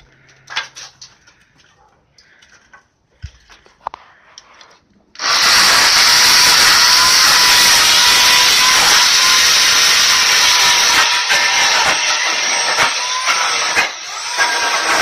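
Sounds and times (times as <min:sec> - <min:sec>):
chainsaw running: 0:05.2 - 0:15.0.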